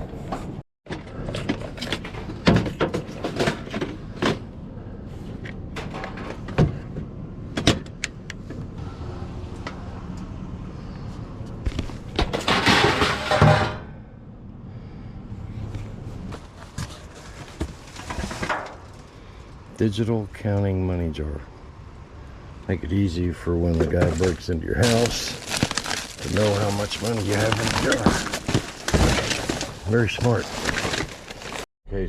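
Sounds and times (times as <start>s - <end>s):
hands rummaging through dumpster: 0.0s - 4.5s, 11.7s - 13.8s, 15.6s - 19.4s, 23.6s - 31.7s.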